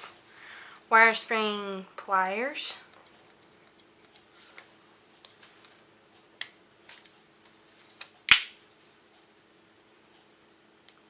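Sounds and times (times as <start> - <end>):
loud metal snap: 8.3 - 8.6.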